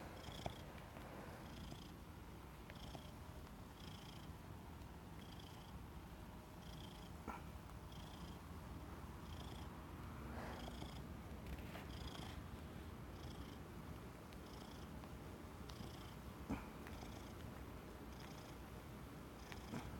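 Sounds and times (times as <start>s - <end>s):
cat purring: 0.0s - 4.4s, 5.1s - 19.9s.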